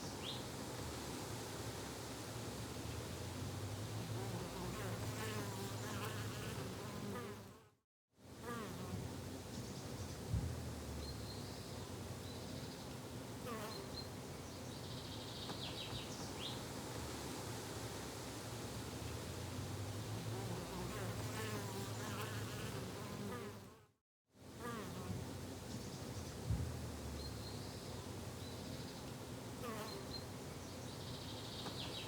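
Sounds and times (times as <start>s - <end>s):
flying insects buzzing: 4.2s - 7.6s, 20.0s - 23.8s.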